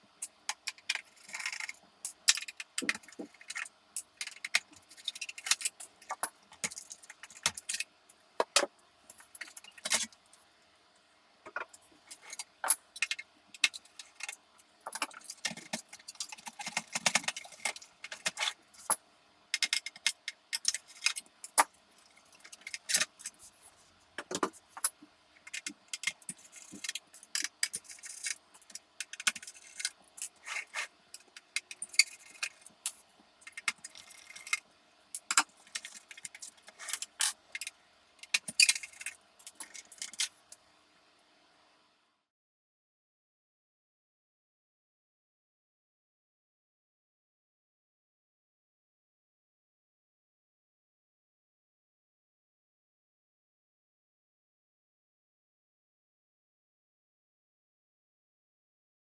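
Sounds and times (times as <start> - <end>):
small metal parts clinking: 35.2 - 40.4.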